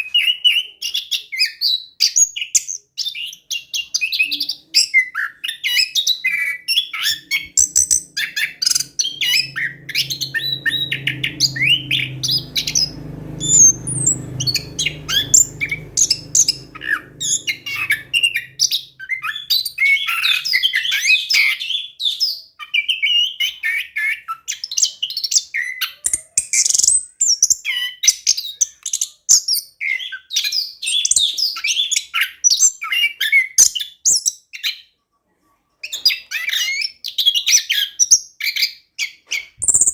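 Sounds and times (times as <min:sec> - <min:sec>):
thrush singing: 0:07.0 - 0:19.6.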